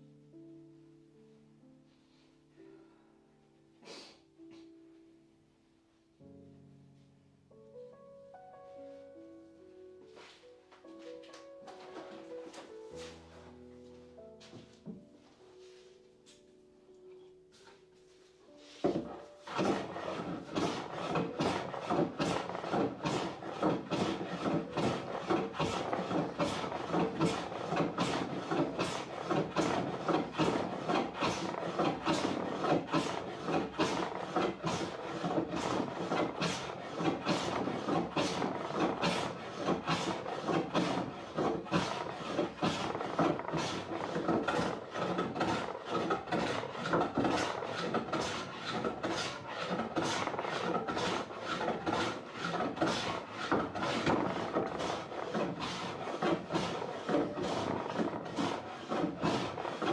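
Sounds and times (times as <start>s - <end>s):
hand sanding wooden door: 18.8s - 59.9s.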